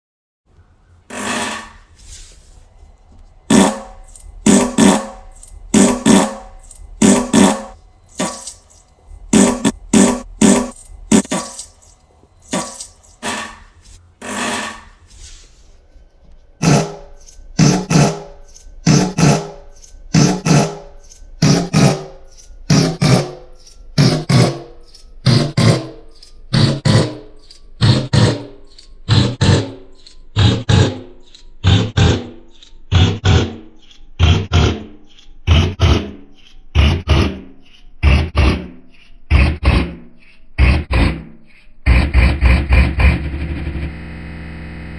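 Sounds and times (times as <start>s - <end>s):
fart sound effect: 3.5s - 8.6s, 16.6s - 18.3s, 18.9s - 19.6s, 20.2s - 20.8s.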